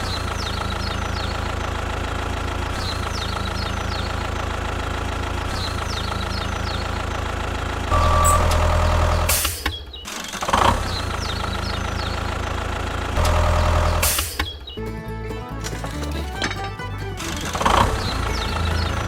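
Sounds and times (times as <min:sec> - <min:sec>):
engine idling: 0:00.0 - 0:19.0.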